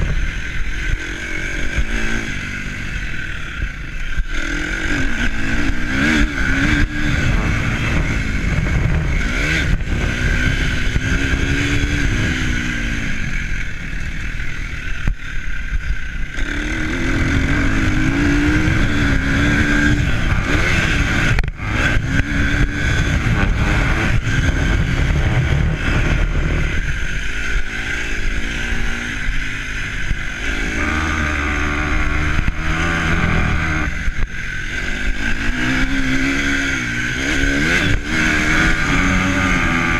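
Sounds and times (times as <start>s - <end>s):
vehicle engine accelerating: 0.0s - 14.7s, 15.8s - 39.9s
wind buffeting microphone: 15.8s - 27.4s.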